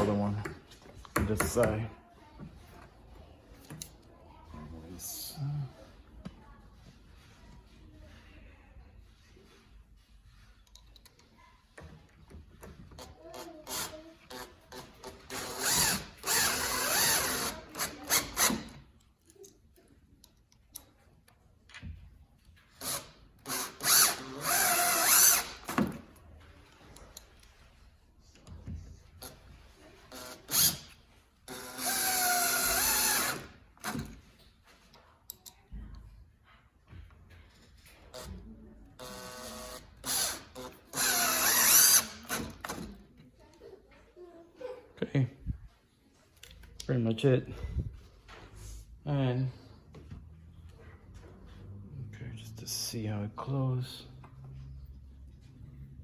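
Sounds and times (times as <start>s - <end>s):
power drill driving screws: 13.7s - 18.8s, 22.8s - 26.0s, 30.1s - 34.2s, 39.0s - 42.9s.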